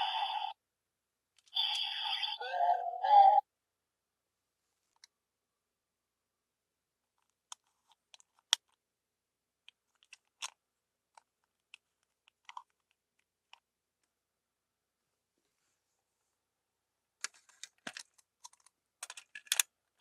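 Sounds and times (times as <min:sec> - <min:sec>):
plastic toy parts clicking: 0:09.9 - 0:10.6, 0:17.2 - 0:19.7.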